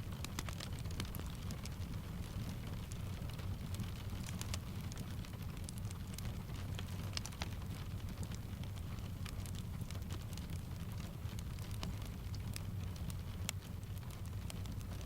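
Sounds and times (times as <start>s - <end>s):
rain pattering on a window: 0.0s - 15.0s
wood fire crackling: 0.0s - 15.0s.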